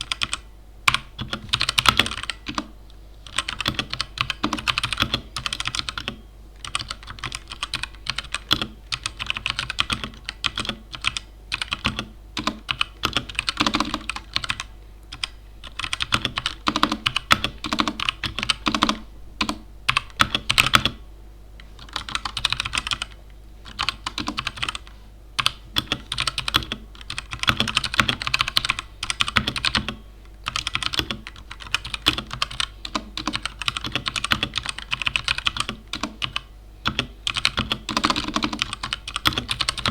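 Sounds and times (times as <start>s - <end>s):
mechanical keyboard typing: 0.0s - 2.7s, 3.3s - 21.0s, 21.8s - 39.9s.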